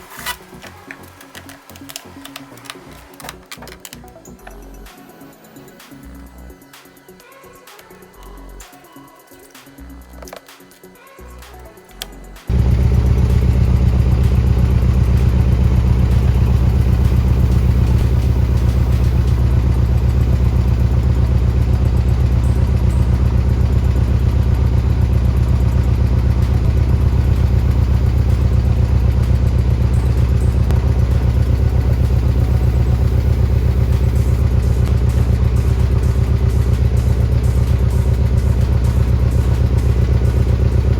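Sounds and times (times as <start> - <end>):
car engine idling: 9.8 - 40.9.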